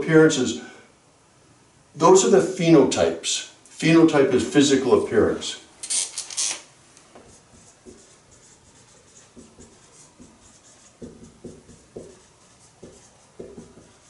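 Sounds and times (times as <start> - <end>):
pen strokes on paper: 7.2 - 14.0.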